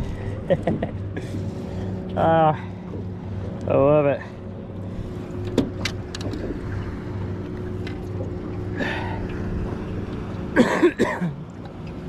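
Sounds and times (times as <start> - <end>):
boat motor humming: 0.0 - 12.0.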